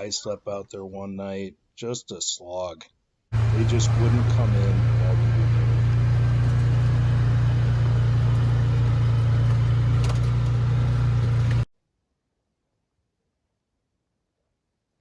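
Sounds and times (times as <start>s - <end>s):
engine running with low hum: 3.3s - 11.7s.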